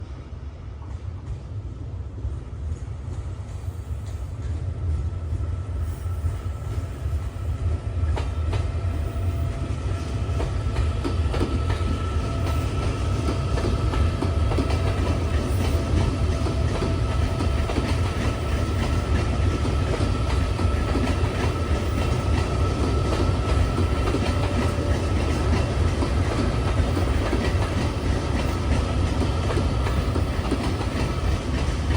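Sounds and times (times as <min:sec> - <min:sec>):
train wheels clacking over rail joints: 0:08.1 - 0:31.9.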